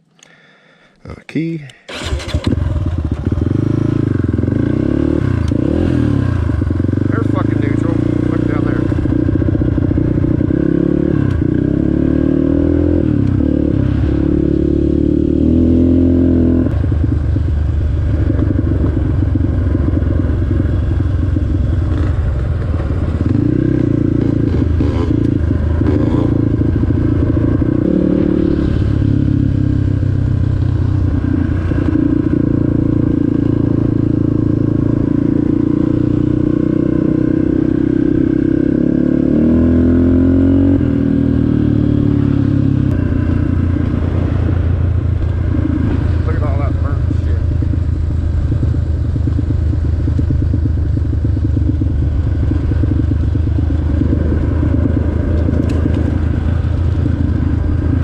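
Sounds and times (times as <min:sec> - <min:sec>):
off-road vehicle engine running: 0:01.9 - 0:58.0.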